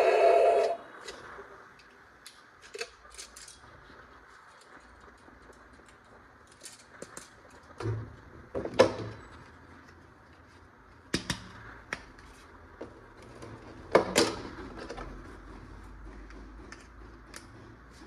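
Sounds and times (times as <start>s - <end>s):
plastic parts clicking and tapping: 11.1s - 12.2s.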